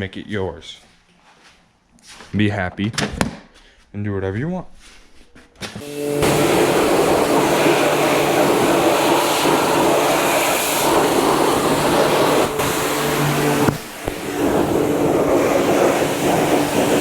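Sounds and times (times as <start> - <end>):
pressure washer motor hum: 5.8 - 17.0
rushing hiss of spray: 5.8 - 17.0.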